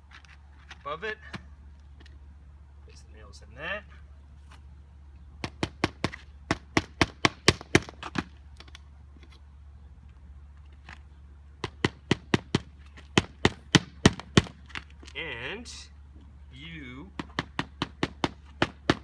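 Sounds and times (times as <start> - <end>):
hammer striking nails: 5.4 - 8.3, 11.6 - 14.6, 17.2 - 19.0.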